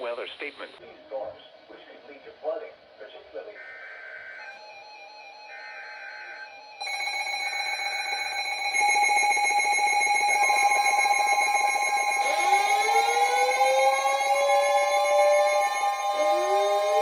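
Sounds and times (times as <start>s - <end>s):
weather radio alarm tones: 3.6s - 17.0s
wailing tone rising in pitch: 4.4s - 17.0s.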